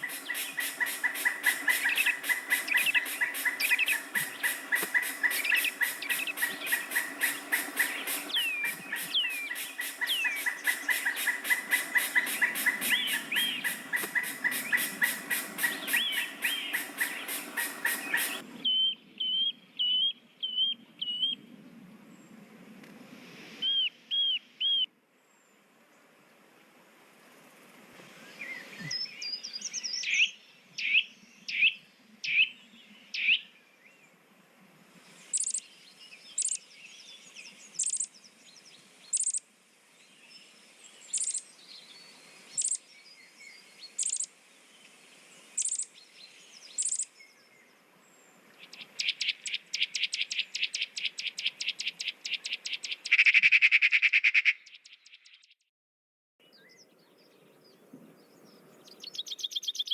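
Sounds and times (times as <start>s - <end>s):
birds chirping and trilling: 0.0s - 21.4s, 40.9s - 44.3s, 45.2s - 47.7s, 48.4s - 55.6s, 56.4s - 59.9s.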